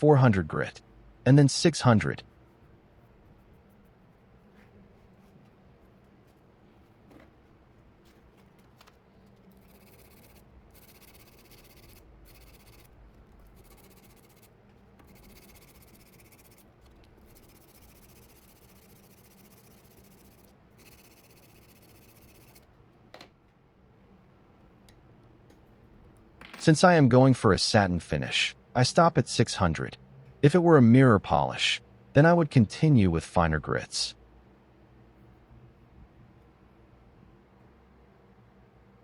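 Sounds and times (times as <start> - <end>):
sandpaper rubbing on steel blade: 9.6 - 22.6.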